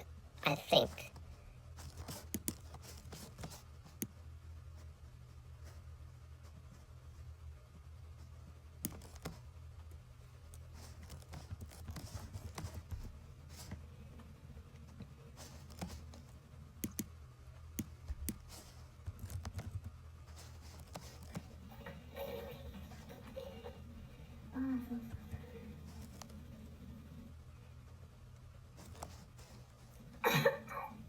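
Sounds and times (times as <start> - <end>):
low steady hum: 0.0 - 31.0
computer keyboard clicks: 16.8 - 17.1.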